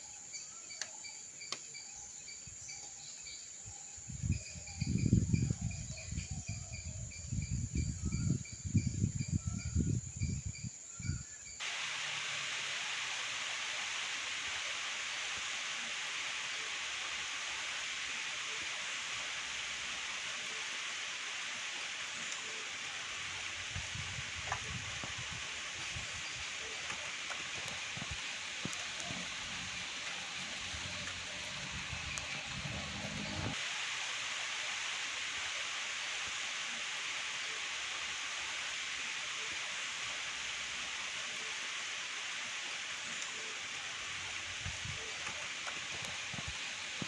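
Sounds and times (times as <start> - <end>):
insect chirping: 0.0 - 34.7
faint water drips: 11.6 - 47.0
rain falling on foliage: 11.6 - 47.0
low rumble: 28.8 - 33.6.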